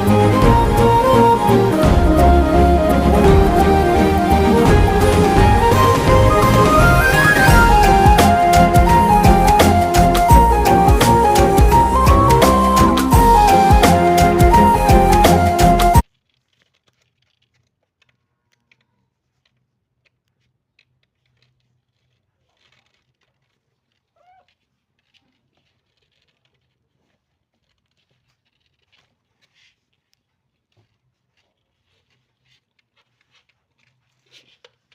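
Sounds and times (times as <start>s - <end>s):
background music: 0.0s - 16.0s.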